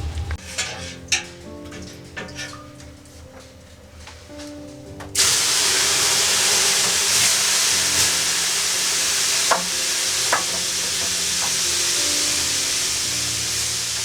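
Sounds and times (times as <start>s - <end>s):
water hissing on hot stones: 5.2s - 14.0s.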